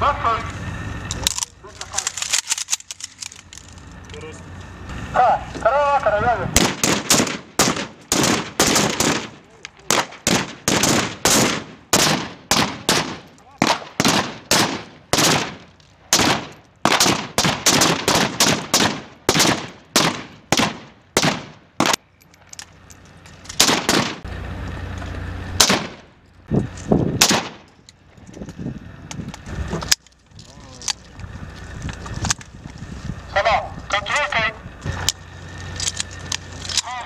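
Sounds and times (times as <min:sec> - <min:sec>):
low rumble: 0:00.0 - 0:36.9
rifle gunshots with echo: 0:06.6 - 0:22.0, 0:23.6 - 0:24.2, 0:25.6 - 0:26.1, 0:27.2 - 0:27.7.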